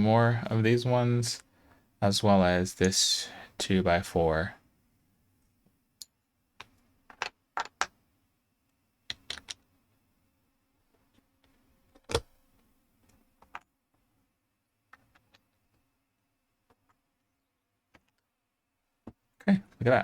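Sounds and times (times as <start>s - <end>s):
plastic bricks clicking together: 6.0s - 8.0s, 9.1s - 9.6s.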